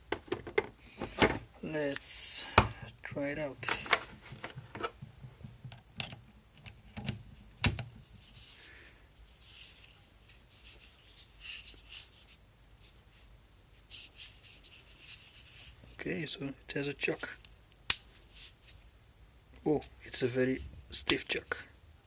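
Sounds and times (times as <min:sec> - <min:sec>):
soft rubbing: 0:08.0 - 0:16.1.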